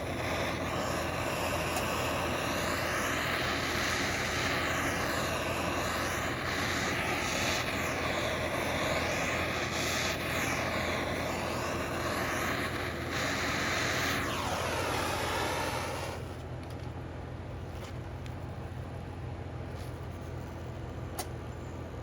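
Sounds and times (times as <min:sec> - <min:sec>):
rushing air: 0:00.0 - 0:16.4.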